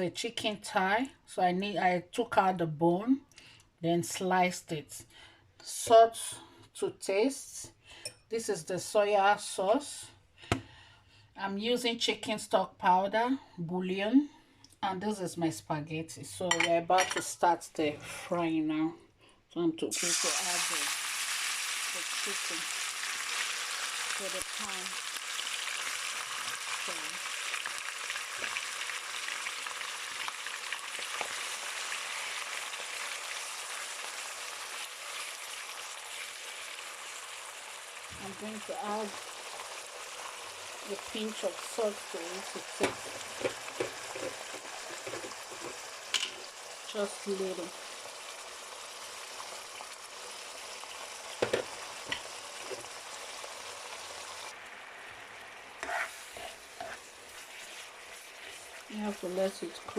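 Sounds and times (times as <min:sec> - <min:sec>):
chicken sizzling in hot oil: 0:19.9 - 0:59.9.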